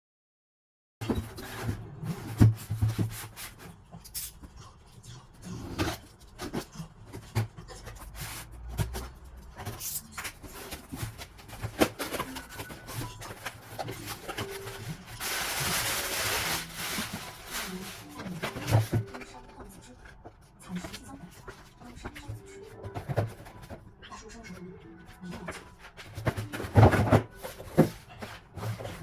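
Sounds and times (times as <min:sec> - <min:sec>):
boxes rubbing and scraping: 0:01.0 - 0:04.6, 0:05.5 - 0:19.9, 0:25.2 - 0:29.0
packaging rustling: 0:07.9 - 0:20.2, 0:25.2 - 0:29.0.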